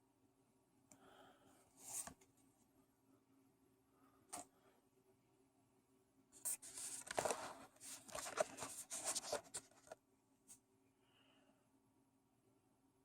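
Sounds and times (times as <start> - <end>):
trading cards rustling and scraping: 6.4 - 10.0.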